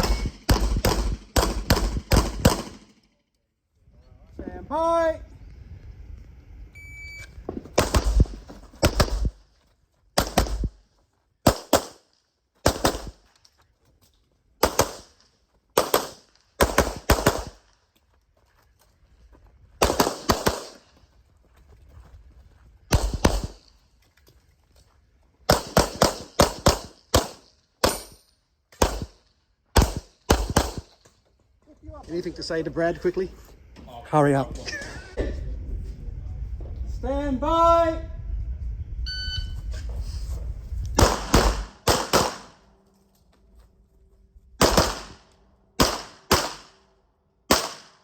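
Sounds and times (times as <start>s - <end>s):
pistol shots: 0.0s - 3.0s, 7.7s - 9.4s, 10.2s - 10.8s, 11.4s - 13.2s, 14.6s - 15.2s, 15.8s - 17.6s, 19.8s - 20.9s, 22.9s - 23.7s, 25.5s - 28.2s, 28.8s - 29.2s, 29.8s - 31.0s, 41.0s - 42.6s, 44.6s - 46.9s, 47.5s - 48.0s
shot timer beep: 39.1s - 39.6s.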